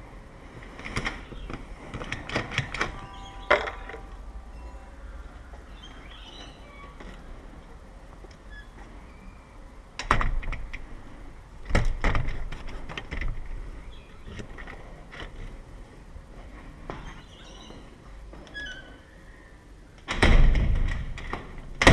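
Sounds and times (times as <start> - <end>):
door lock and handle clicking: 0.9 - 4.1.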